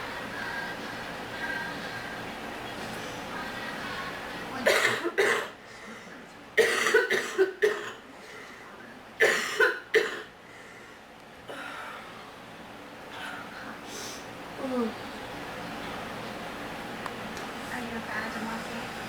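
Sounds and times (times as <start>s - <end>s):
person coughing: 4.6s - 5.6s, 6.6s - 8.0s, 9.2s - 10.3s.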